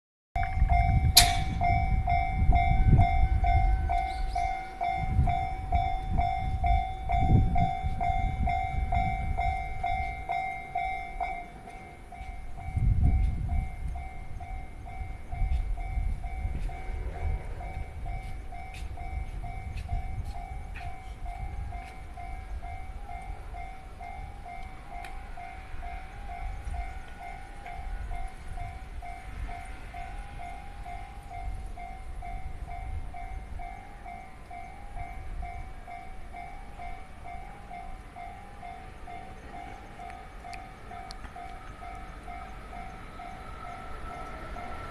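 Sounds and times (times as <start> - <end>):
railway crossing bell ringing: 0.4 - 44.9
train rumbling: 0.4 - 44.9.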